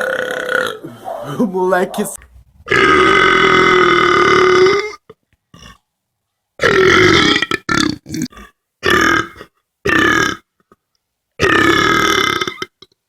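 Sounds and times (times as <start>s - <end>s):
person belching: 0.0s - 1.0s, 2.7s - 5.8s, 6.6s - 10.5s, 11.4s - 13.0s.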